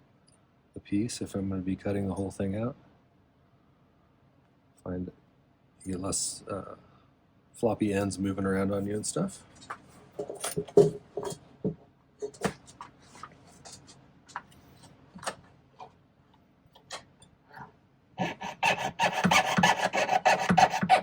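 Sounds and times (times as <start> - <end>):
saw rasping through metal sheet: 18.2 - 21.0.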